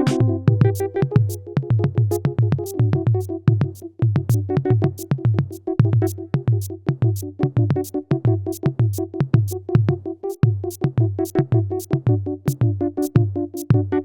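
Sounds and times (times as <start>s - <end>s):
synthesizer notes: 0.0s - 3.3s
drum machine beat: 0.0s - 14.0s.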